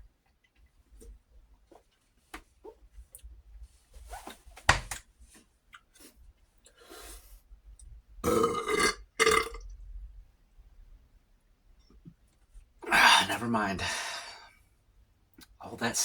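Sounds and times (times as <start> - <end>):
man burping: 8.2 - 9.6.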